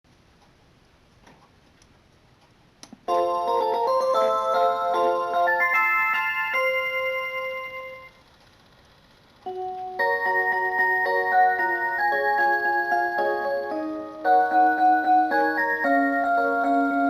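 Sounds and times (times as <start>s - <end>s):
electronic clock melody chime: 3.1s - 8.2s, 9.5s - 17.0s.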